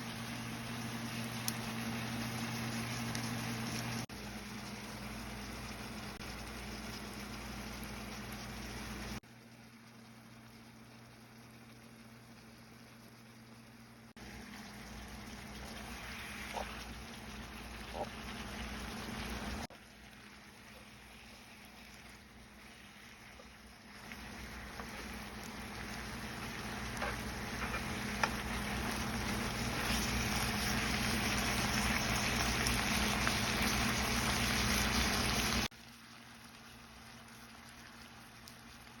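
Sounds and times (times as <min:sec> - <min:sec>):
meat sizzling in a pan: 0:14.2 - 0:39.0.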